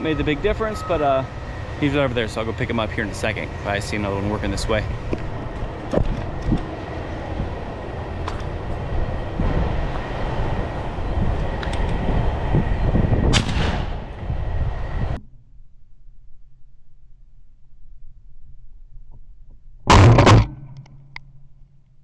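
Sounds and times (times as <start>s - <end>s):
steady rumbling background: 0.0s - 22.0s
shotgun shot: 13.3s - 14.0s, 19.9s - 20.7s.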